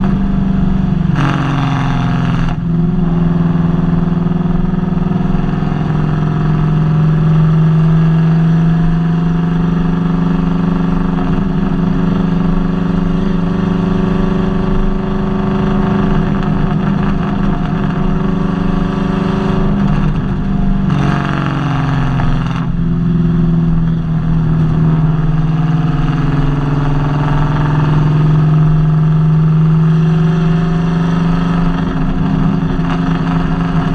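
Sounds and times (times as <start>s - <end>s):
engine running with misfire: 13.7s - 33.9s.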